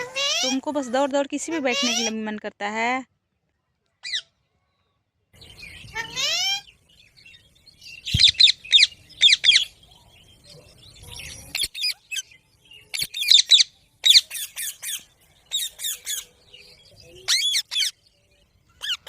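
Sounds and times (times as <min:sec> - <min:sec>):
parrot squawking: 0:00.0 - 0:00.6, 0:01.5 - 0:02.2, 0:05.9 - 0:06.7, 0:17.3 - 0:18.0, 0:18.8 - 0:19.0.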